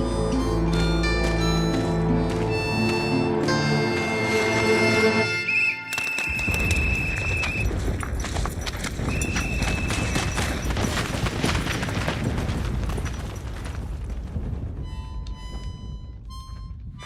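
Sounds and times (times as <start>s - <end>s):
low rumble with sharp cracks: 6.3s - 16.8s.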